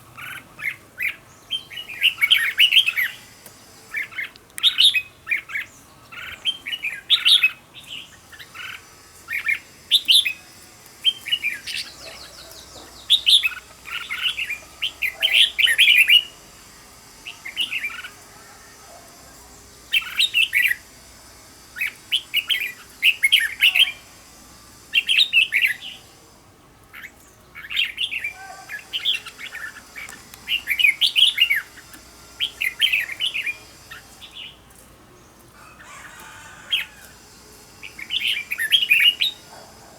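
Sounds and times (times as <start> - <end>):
bird singing warbled phrases: 0.0 - 16.4, 26.9 - 36.0.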